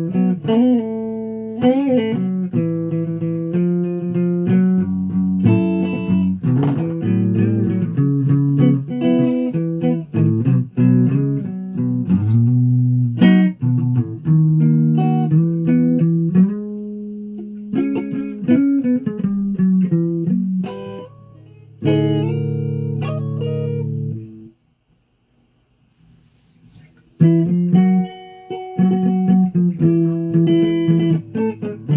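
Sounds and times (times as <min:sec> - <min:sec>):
guitar notes and chords: 0:00.0 - 0:24.5, 0:27.2 - 0:31.9.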